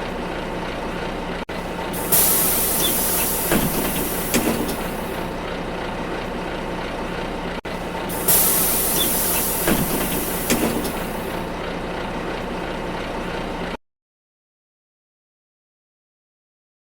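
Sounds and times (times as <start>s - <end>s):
bus engine hum: 0.0s - 13.8s
air hiss of bus door: 2.0s - 5.3s, 8.1s - 11.5s.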